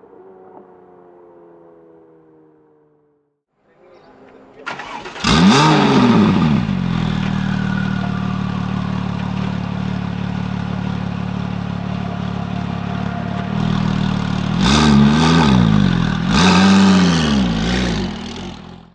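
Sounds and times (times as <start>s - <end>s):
car engine idling: 4.7s - 18.9s
engine throttle blips: 4.7s - 18.9s.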